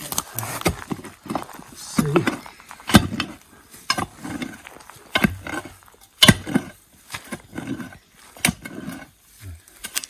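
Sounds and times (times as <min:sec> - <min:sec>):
digging tool striking clay soil: 0:00.0 - 0:10.0
grunt-like sound: 0:01.8 - 0:02.5.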